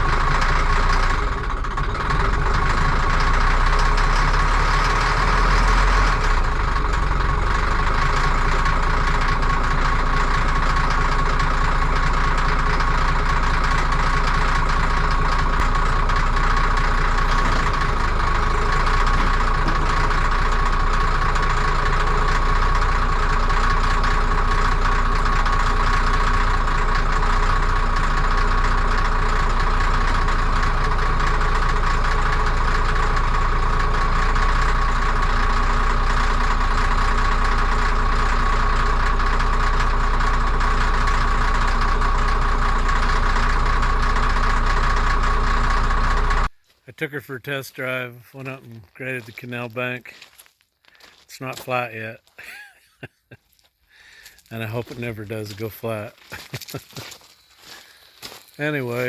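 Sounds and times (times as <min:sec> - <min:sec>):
diesel engine rumble: 0:00.0 - 0:59.0.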